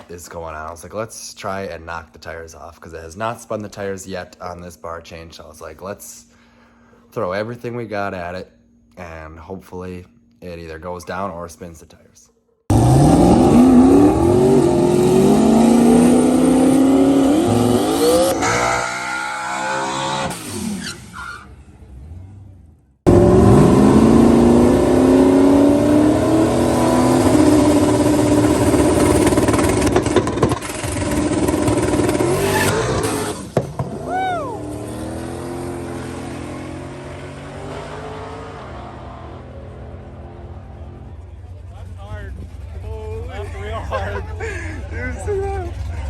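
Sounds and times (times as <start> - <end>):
drag car engine at full throttle: 12.7 - 46.0.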